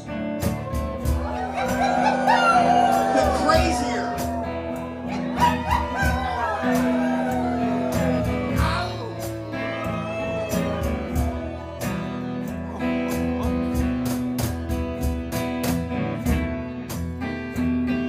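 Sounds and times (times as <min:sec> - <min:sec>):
audience howling and yipping: 0:00.4 - 0:13.0.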